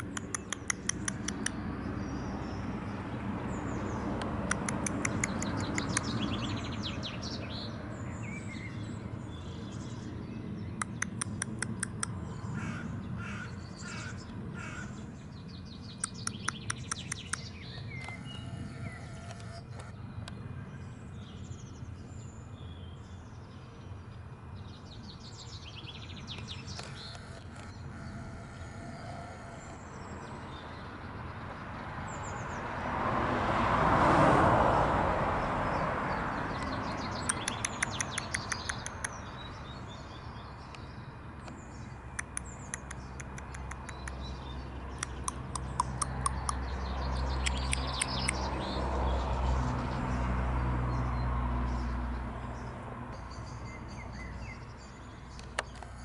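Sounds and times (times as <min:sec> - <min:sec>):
blackbird rattling calls: 0:12.6 - 0:14.9
high bird chirps: 0:36.5 - 0:39.4, 0:42.2 - 0:48.6.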